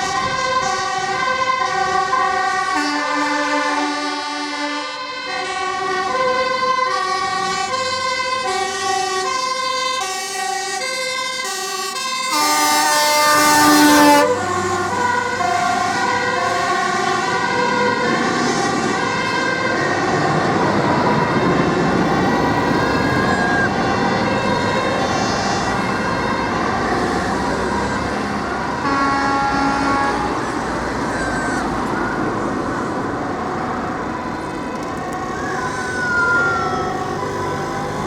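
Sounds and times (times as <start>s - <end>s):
fire engine two-tone siren: 0.0s - 38.0s
loud horn blast: 2.6s - 5.5s, 12.2s - 15.3s, 28.7s - 30.9s.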